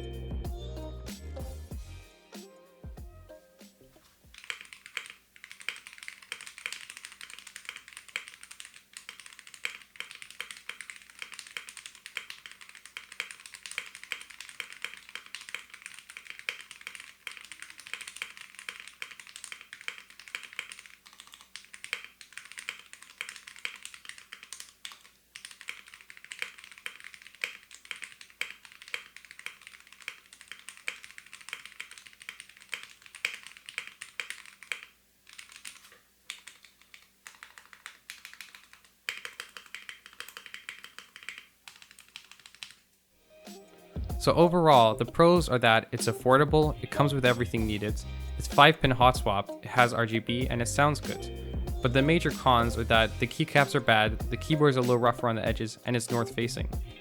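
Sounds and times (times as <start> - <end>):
mechanical keyboard key clacks: 4.4 - 42.8.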